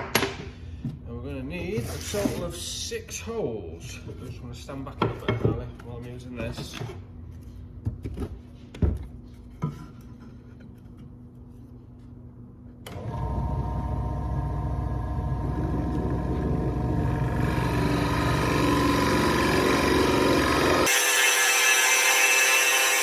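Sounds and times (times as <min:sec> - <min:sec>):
electric drill boring into wood: 0:15.3 - 0:23.0.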